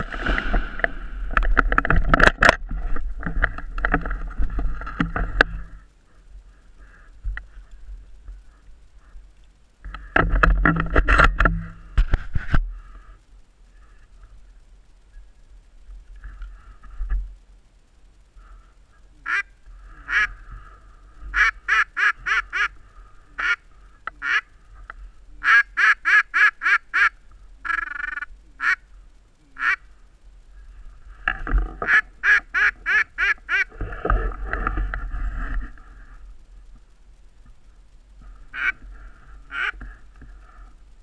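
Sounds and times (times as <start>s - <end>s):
duck quacking: 19.2s - 20.4s, 21.3s - 22.8s, 23.4s - 24.5s, 25.4s - 28.8s, 29.5s - 29.9s, 31.8s - 33.7s, 38.5s - 38.8s, 39.5s - 39.9s.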